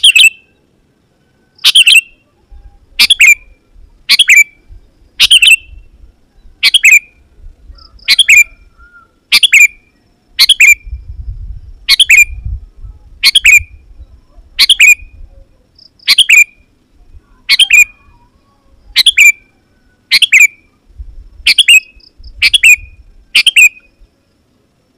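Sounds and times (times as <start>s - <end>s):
bird calling sharply: 0.0s - 0.6s, 1.6s - 4.6s, 5.2s - 5.9s, 6.6s - 7.1s, 7.8s - 10.9s, 13.2s - 13.8s, 14.6s - 16.6s, 17.3s - 20.7s, 21.5s - 23.9s.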